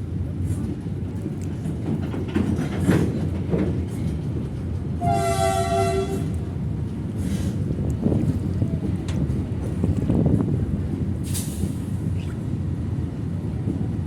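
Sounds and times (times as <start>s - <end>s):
train rumbling along track: 0.0s - 14.0s
train horn blast: 5.0s - 6.4s.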